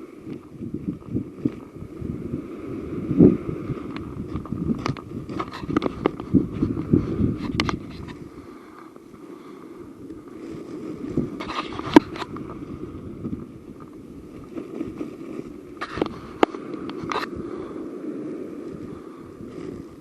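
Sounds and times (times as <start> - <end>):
wind rumble on microphone: 0.0 - 20.0.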